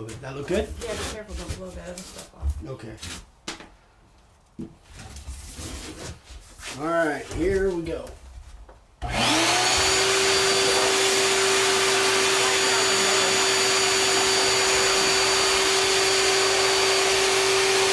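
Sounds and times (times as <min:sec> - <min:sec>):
electric blower motor whine: 0:09.0 - 0:17.9.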